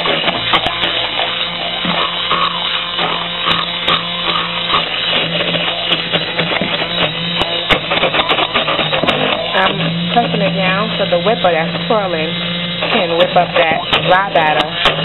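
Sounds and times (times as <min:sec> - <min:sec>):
electric hand mixer running: 0:00.0 - 0:15.0
beaters knocking against bowl: 0:12.9 - 0:15.0.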